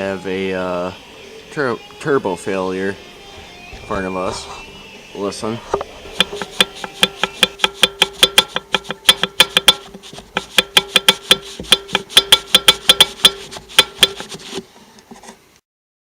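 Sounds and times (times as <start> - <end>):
engine whine: 0.0 - 7.7
rapid sharp ticking: 6.1 - 14.6.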